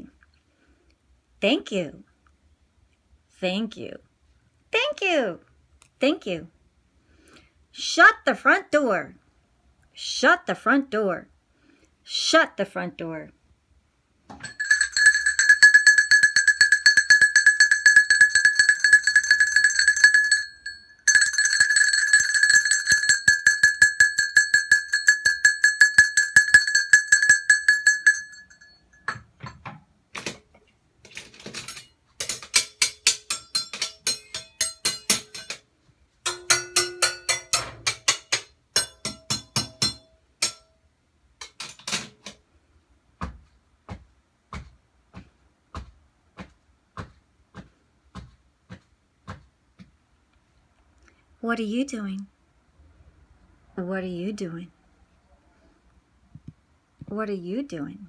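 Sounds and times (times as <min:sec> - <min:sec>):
bell ringing rapidly: 0:14.4 - 0:29.2, 0:32.3 - 0:35.6, 0:36.3 - 0:40.6
rapid clinking and rattling strikes: 0:14.4 - 0:29.5, 0:31.1 - 0:35.6, 0:36.3 - 0:40.7, 0:41.4 - 0:42.3.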